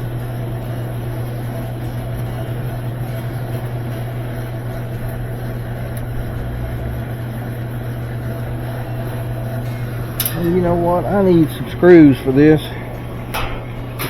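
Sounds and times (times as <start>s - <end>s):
low mechanical machine hum: 0.0s - 14.0s.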